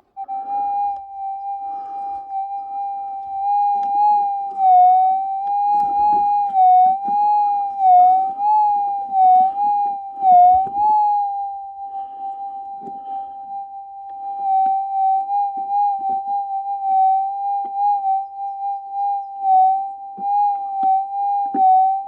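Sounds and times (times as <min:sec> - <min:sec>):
metal detector wavering tone: 0:00.0 - 0:22.0.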